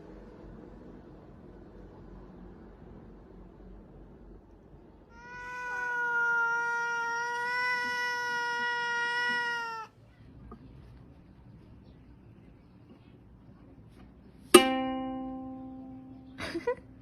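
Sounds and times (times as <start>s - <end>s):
cat yowling: 5.1s - 9.9s.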